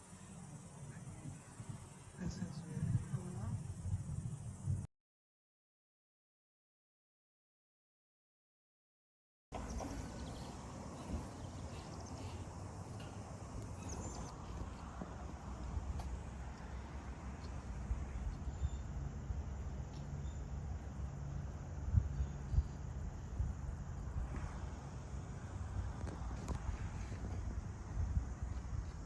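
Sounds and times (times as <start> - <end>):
footsteps on wooden walkway: 9.6 - 18.4.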